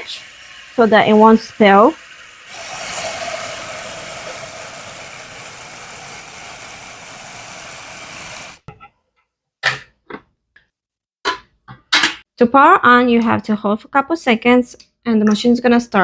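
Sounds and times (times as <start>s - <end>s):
water pouring into a tank: 0.0s - 8.6s.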